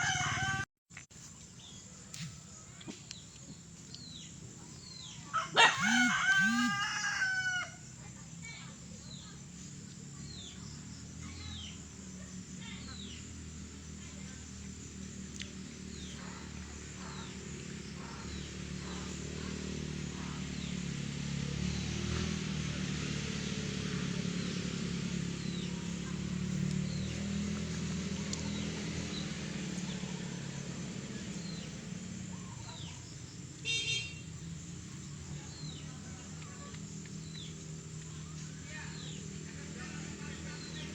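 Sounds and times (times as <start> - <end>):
small birds chirping: 1.2 - 6.8, 8.1 - 40.9
vehicle engine passing: 4.1 - 40.9
high horn toot: 5.8 - 6.9, 33.6 - 34.3.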